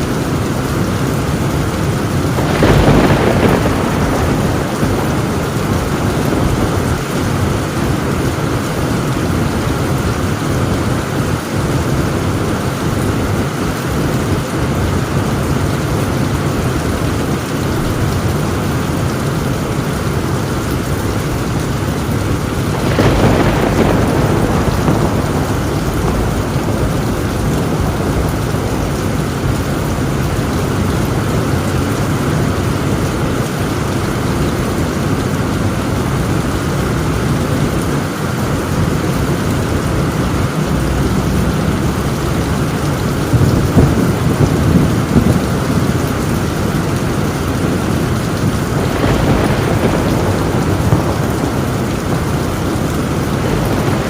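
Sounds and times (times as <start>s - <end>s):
heavy rain on a tin roof: 0.0s - 54.0s
thunder clap and rumbling: 0.0s - 54.0s.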